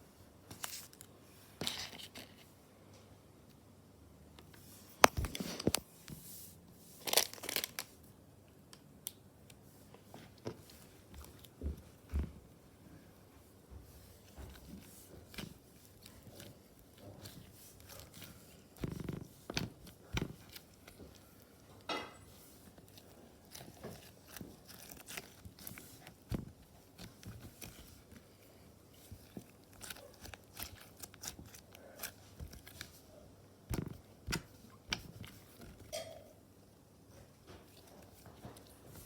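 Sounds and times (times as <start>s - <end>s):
hands squishing slime: 13.9s - 36.0s.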